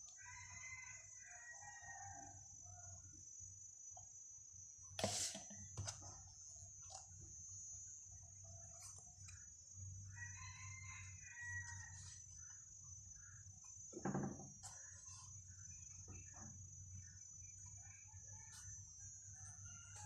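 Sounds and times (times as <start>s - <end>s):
rooster crowing: 0.1s - 3.0s, 10.1s - 12.3s, 17.8s - 20.0s
high insect drone: 0.2s - 20.0s.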